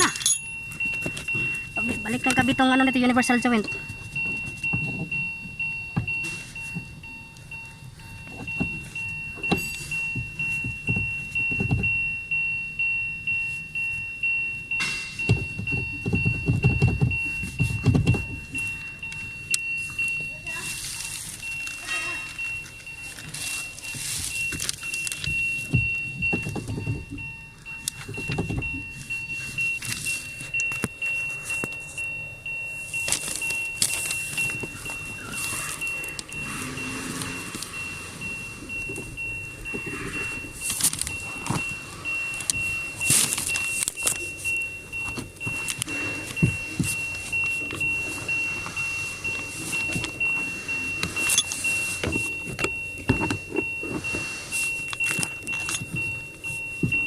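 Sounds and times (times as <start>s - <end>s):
metal tools clinking: 0.0s - 2.4s, 51.0s - 54.0s.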